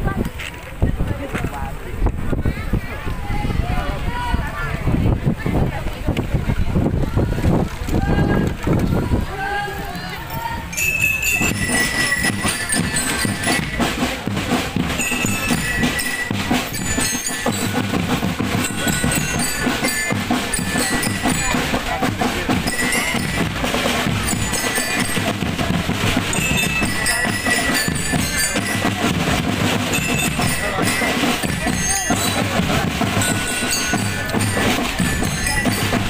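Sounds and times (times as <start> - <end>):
pitched melody line: 10.7 - 36.0
snare and bass drums: 10.8 - 36.0.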